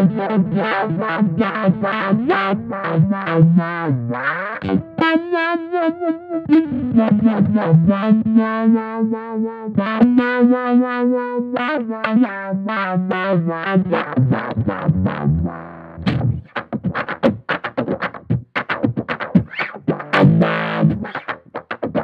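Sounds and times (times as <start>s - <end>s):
distorted electric bass with filter sweep: 0.0s - 22.0s.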